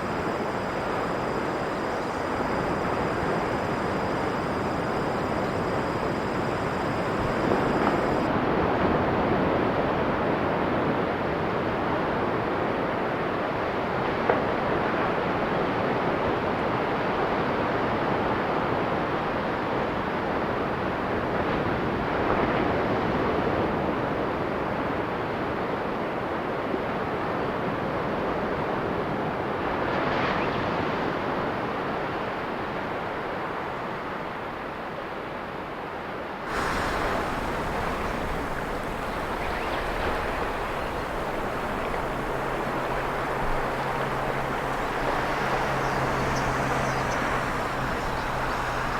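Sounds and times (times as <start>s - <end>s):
faint low hum: 0.0s - 8.3s, 36.5s - 48.9s
ocean waves washing on shore: 0.0s - 8.4s, 36.5s - 48.9s.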